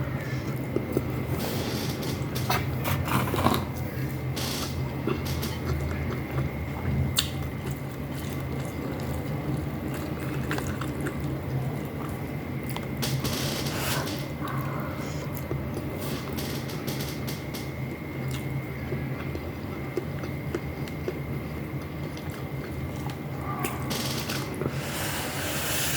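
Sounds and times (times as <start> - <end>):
steady low hum: 0.0 - 25.9
wet chewing mouth sounds: 5.0 - 12.9.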